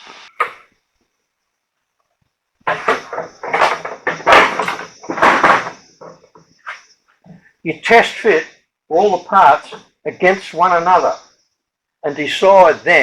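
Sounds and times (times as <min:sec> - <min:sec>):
parts knocking and clattering: 0:02.6 - 0:07.5.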